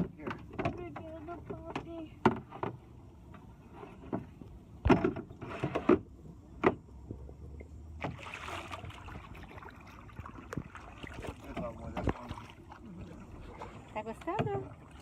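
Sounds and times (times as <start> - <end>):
knocks against a small boat: 0.0 - 2.8, 4.0 - 6.8, 14.2 - 14.6
water splashing: 7.9 - 15.0.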